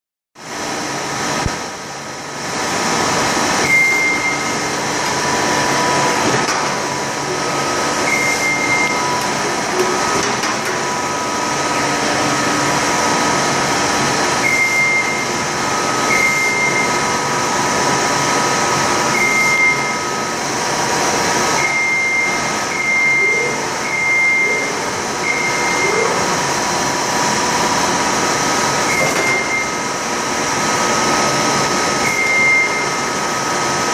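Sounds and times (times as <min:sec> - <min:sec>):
machinery noise: 0:02.4 - 0:33.9
short high-pitched beeps: 0:03.6 - 0:04.6, 0:07.6 - 0:09.3, 0:14.4 - 0:15.3, 0:16.0 - 0:17.0, 0:19.2 - 0:20.0, 0:21.6 - 0:26.2, 0:28.9 - 0:29.8, 0:32.0 - 0:33.0.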